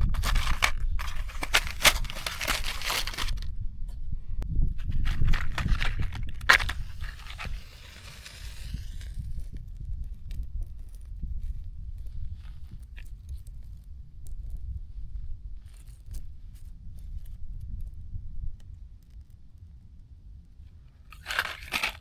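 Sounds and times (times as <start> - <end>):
dry twigs crunching: 0.0 - 3.5, 4.8 - 9.0, 21.1 - 22.0.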